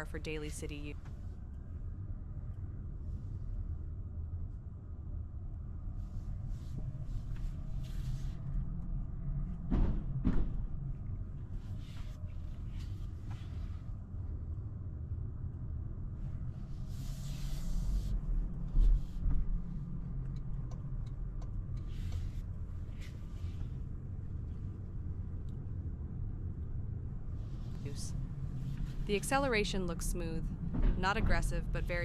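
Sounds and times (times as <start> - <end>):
car road and engine rumble: 0.0 - 32.0
thump: 9.7 - 10.7.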